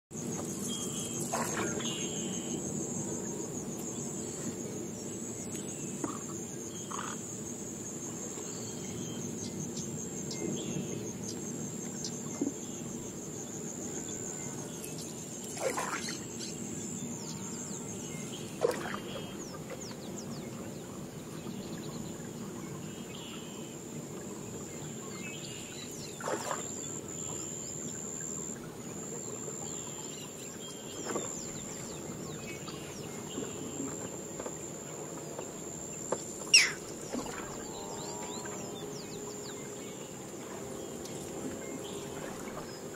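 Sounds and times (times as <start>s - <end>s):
insects and crickets droning: 0.1s - 42.9s
paddle splashing water: 0.2s - 7.2s, 14.6s - 16.6s, 18.2s - 23.4s, 24.0s - 42.9s
bird calls: 5.5s - 7.2s, 36.4s - 40.0s.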